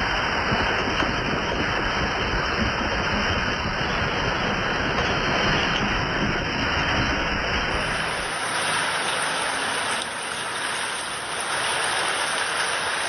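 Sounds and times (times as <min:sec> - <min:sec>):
floodwater rushing: 0:03.7 - 0:13.0.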